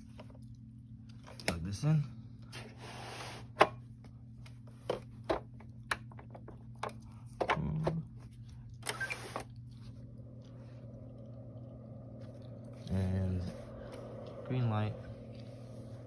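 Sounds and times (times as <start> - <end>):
steady low hum: 3.4 - 16.0.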